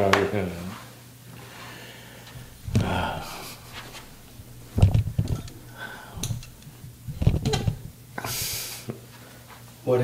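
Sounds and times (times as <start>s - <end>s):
joints popping: 2.3s - 8.7s
low groan: 2.4s - 8.1s
person exhaling sharply: 8.2s - 8.9s.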